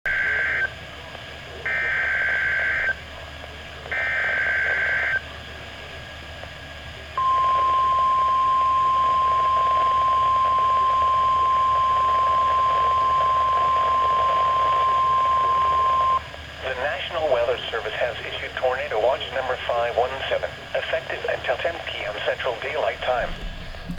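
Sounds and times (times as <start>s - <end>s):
steady warning alarm tone: 1.7s - 3.0s, 3.9s - 5.2s, 7.2s - 16.3s.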